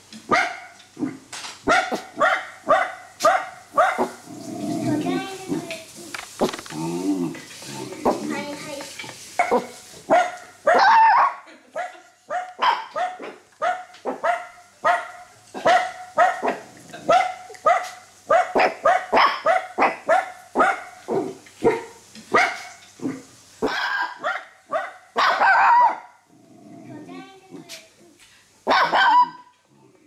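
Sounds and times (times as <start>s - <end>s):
dog barking: 0.3s - 0.8s, 1.6s - 4.2s, 9.4s - 22.8s, 23.6s - 26.2s, 28.7s - 29.5s.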